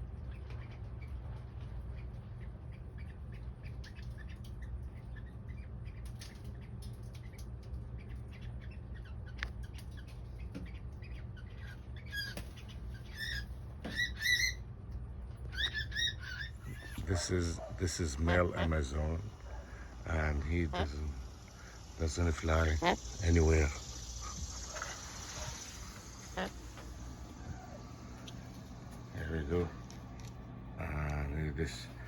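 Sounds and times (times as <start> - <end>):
steady low hum: 0.0 - 32.0
faint chirps and clicks: 0.4 - 13.4, 16.4 - 31.2
parrot squawking: 15.5 - 30.2.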